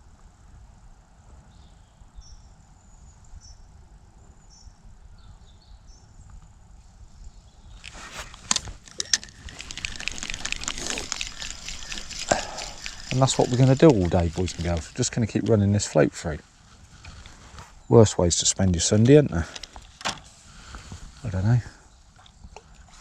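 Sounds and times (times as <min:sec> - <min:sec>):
loud clicks and rustling: 0:07.8 - 0:15.6, 0:19.0 - 0:20.4.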